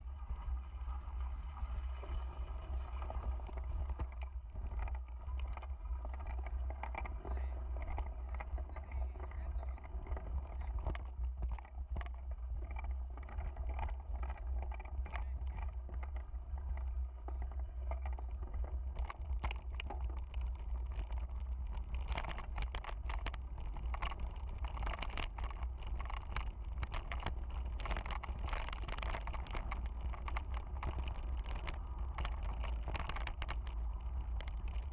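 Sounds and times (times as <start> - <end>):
raindrops ticking: 16.9 - 34.9
rain rumble and wash: 17.1 - 34.9.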